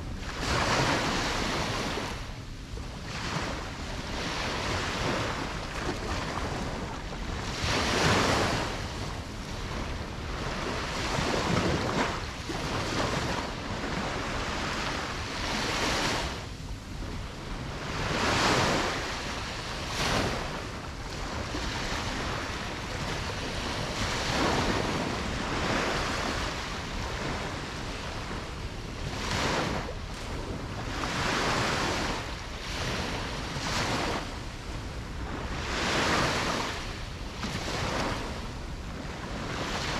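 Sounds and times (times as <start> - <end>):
ocean waves breaking on beach: 0.0 - 39.9
wind on microphone: 0.0 - 39.9.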